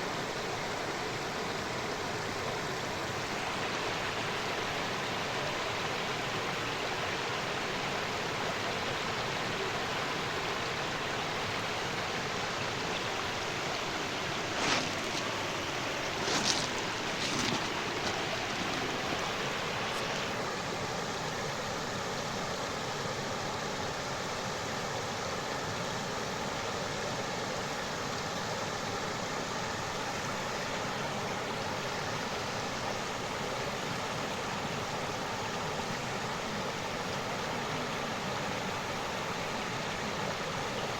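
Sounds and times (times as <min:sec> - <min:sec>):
stream flowing over rocks: 0:00.0 - 0:40.9
water splashes: 0:14.2 - 0:20.4.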